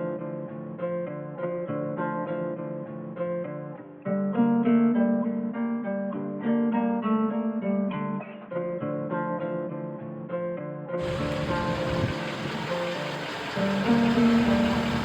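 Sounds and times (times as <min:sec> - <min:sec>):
acoustic guitar picking: 0:11.0 - 0:15.0.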